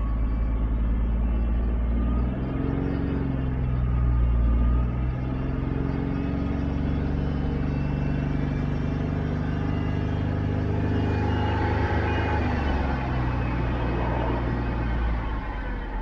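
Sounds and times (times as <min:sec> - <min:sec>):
car engine running: 0:00.0 - 0:16.0
whining noise: 0:00.0 - 0:16.0.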